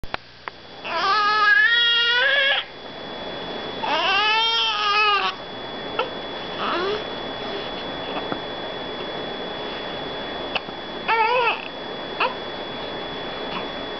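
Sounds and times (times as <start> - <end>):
newborn baby crying: 0.8 - 2.7, 3.8 - 5.4, 11.1 - 12.4.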